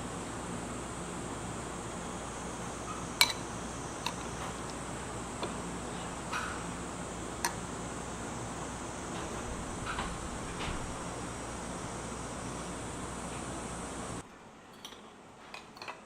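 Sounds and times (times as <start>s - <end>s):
background hiss: 0.0s - 14.2s
tableware clinking: 3.2s - 4.2s, 14.7s - 16.0s.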